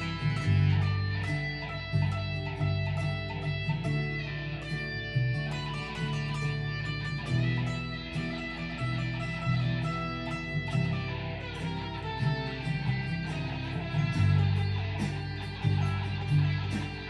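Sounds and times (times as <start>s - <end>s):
electric guitar lead notes: 0.0s - 17.0s
sustained bass notes: 8.8s - 17.0s.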